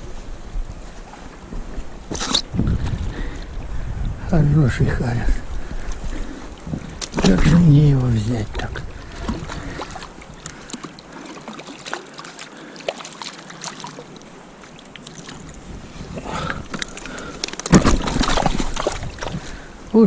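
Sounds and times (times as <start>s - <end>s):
river water rushing around boat: 4.8s - 20.0s
small splashes: 6.0s - 19.7s.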